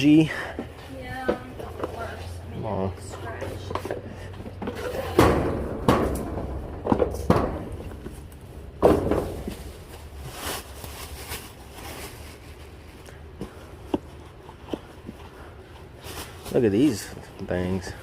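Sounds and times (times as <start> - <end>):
rustling and handling: 3.0 - 18.0
knocks and thuds of items handled: 3.3 - 10.1.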